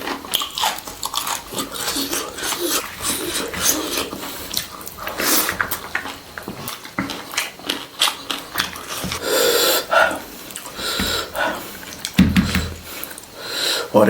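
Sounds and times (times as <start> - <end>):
wet chewing and lip smacks: 0.0 - 9.2, 9.9 - 12.2.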